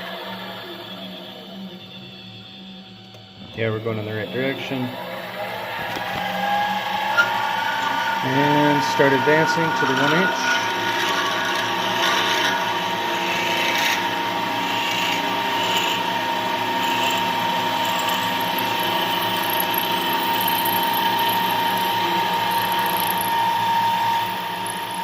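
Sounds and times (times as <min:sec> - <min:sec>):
gear train whirring: 0:00.0 - 0:25.0
metal lathe whining: 0:00.0 - 0:25.0.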